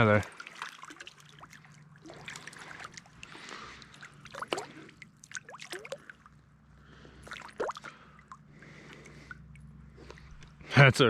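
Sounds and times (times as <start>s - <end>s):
water splashing and dripping: 0.0s - 10.7s
small stream trickling: 0.0s - 10.8s.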